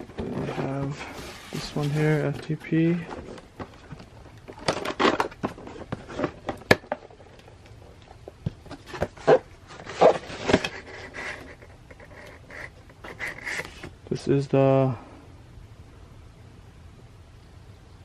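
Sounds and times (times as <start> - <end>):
rustling and scraping of box: 0.0 - 14.0.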